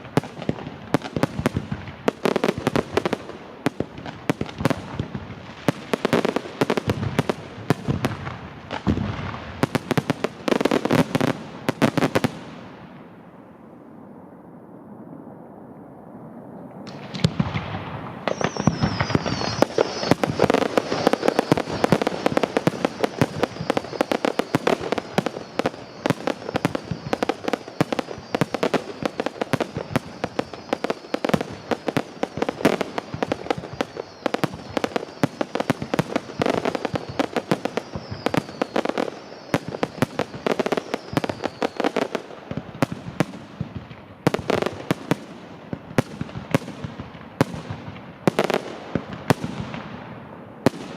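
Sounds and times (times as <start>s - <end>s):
fireworks bangs and crackles: 0.0s - 13.5s, 16.8s - 50.9s
high hiss: 18.0s - 43.6s.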